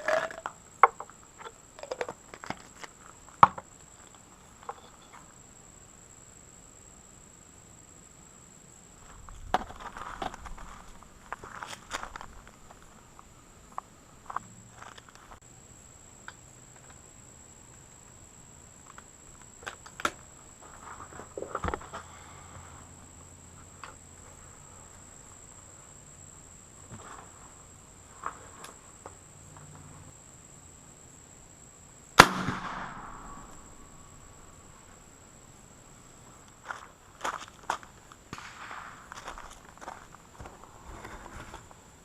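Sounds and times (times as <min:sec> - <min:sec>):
loud gunshot with echo: 0:32.2 - 0:33.5.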